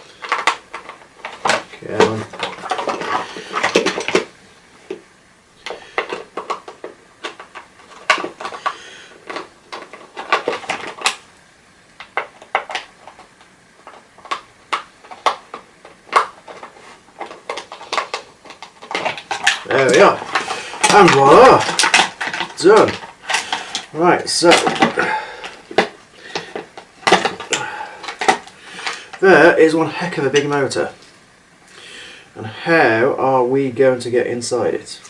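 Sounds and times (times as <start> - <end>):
vacuum cleaner parts clicking and rattling: 0.0 - 4.3, 5.6 - 11.2, 12.0 - 29.3.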